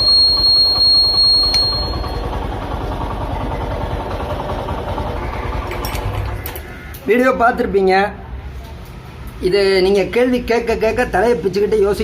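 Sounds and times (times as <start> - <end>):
motorcycle engine idling: 0.0 - 6.6.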